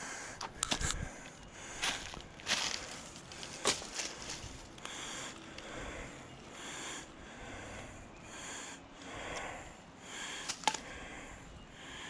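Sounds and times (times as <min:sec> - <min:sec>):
person breathing heavily: 0:00.0 - 0:12.0.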